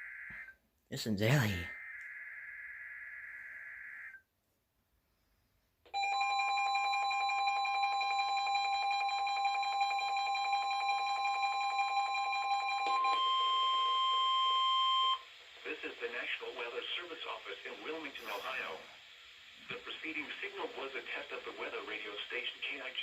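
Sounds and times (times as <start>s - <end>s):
alert receivers beeping: 6.0s - 15.2s
steady warning alarm tone: 6.0s - 15.4s.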